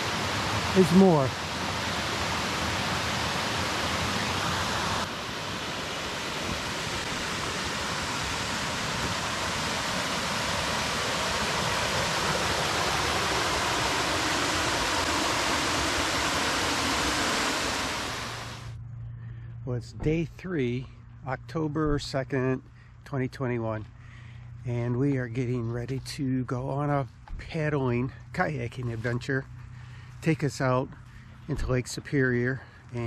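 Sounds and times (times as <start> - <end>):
water rushing over rocks: 0.0 - 18.7.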